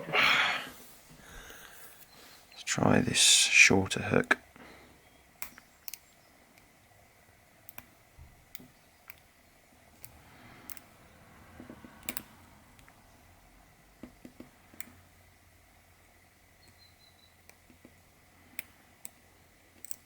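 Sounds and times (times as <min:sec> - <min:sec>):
lock picking metallic clicks: 0:05.4 - 0:06.7, 0:07.6 - 0:09.3, 0:10.0 - 0:10.9, 0:12.0 - 0:13.0, 0:16.6 - 0:20.0.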